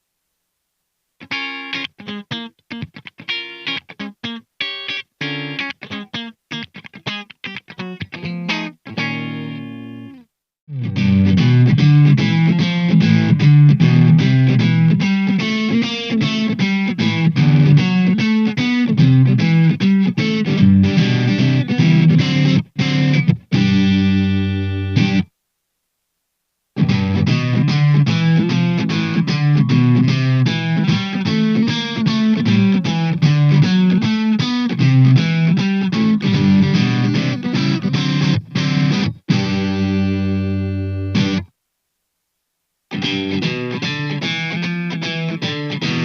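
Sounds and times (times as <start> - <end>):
distorted electric guitar chords: 1.2 - 25.3, 26.8 - 41.5, 42.9 - 46.0
clean electric guitar notes: 7.4 - 25.3, 26.8 - 41.5.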